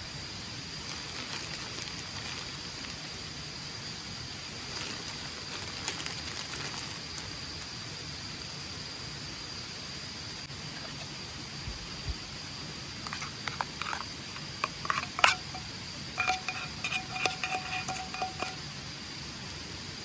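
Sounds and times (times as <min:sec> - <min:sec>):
small crackles: 0:00.5 - 0:03.2, 0:04.4 - 0:07.8
thin high steady tone: 0:10.7 - 0:19.0.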